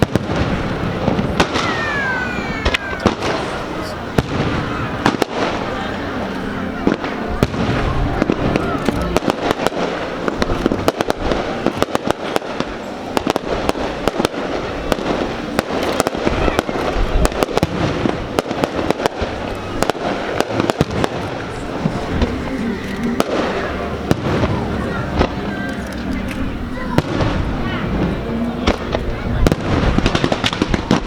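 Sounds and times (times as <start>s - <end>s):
fireworks crackling: 0.0s - 31.0s
fireworks sharp bangs: 0.0s - 31.0s.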